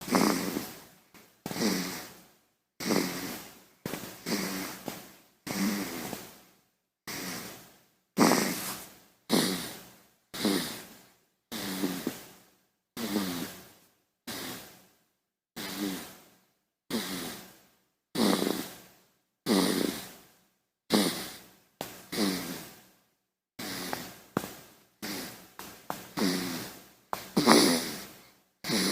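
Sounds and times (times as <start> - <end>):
baby snoring: 0.0 - 0.9, 1.5 - 2.2, 2.8 - 6.4, 7.1 - 7.6, 8.2 - 12.3, 13.0 - 13.7, 14.3 - 14.8, 15.6 - 16.2, 16.9 - 17.6, 18.2 - 18.8, 19.4 - 20.2, 20.9 - 21.5, 22.1 - 22.8, 23.6 - 24.2, 25.0 - 28.9.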